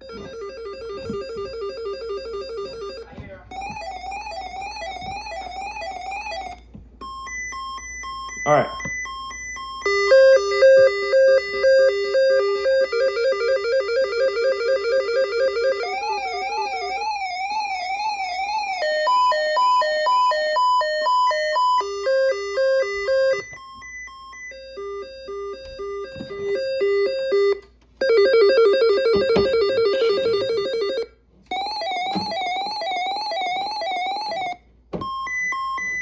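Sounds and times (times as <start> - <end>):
two-note electronic alert beeping: 0.0 - 31.0
warbling alert tone: 9.9 - 20.4.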